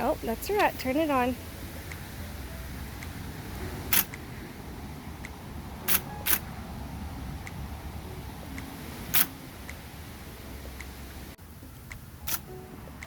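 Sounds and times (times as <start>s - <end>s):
electric typewriter hum: 3.8s - 4.2s, 5.9s - 6.4s.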